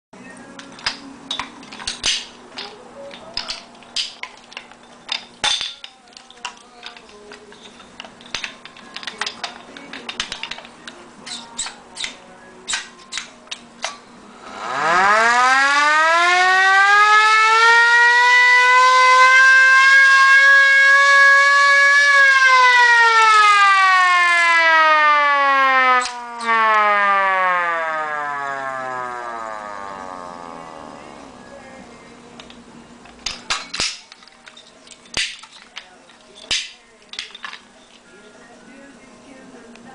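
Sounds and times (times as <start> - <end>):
air-raid siren wailing: 12.8 - 31.6
faint steady hum: 27.7 - 39.9.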